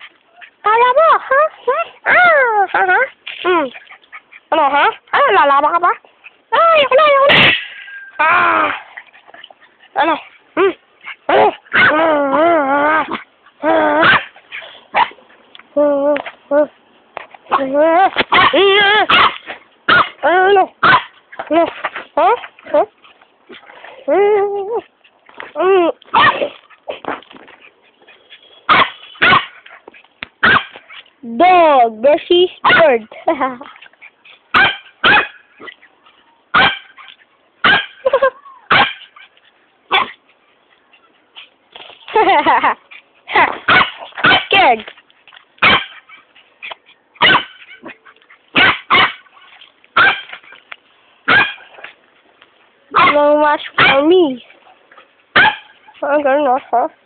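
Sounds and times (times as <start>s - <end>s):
dog yelping and barking: 0.0s - 5.6s, 6.2s - 15.2s, 17.5s - 23.7s, 26.1s - 31.1s, 32.6s - 33.0s, 33.7s - 40.2s, 42.4s - 44.8s, 45.6s - 51.9s, 52.9s - 56.0s
faint small noises: 0.0s - 57.0s
dog barking: 7.2s - 7.7s, 11.3s - 12.0s, 14.0s - 14.3s, 18.3s - 20.2s, 20.8s - 21.1s, 26.1s - 26.5s, 28.7s - 29.6s, 30.4s - 30.8s, 34.6s - 35.4s, 36.5s - 37.0s, 37.6s - 38.0s, 38.7s - 39.1s, 39.9s - 40.2s, 43.7s - 44.6s, 45.6s - 46.1s, 47.2s - 49.2s, 50.0s - 50.4s, 51.3s - 51.7s, 52.9s - 53.2s, 53.8s - 54.0s, 55.3s - 55.8s.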